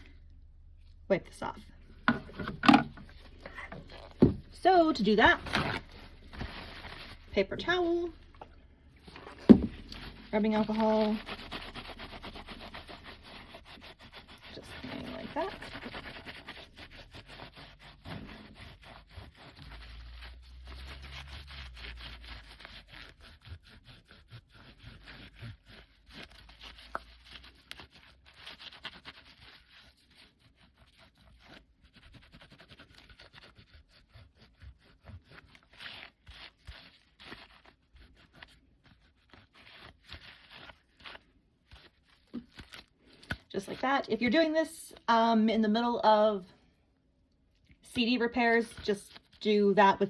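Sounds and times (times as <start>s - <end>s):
paper towel rubbing and scraping: 1.4s - 45.1s, 47.9s - 50.0s.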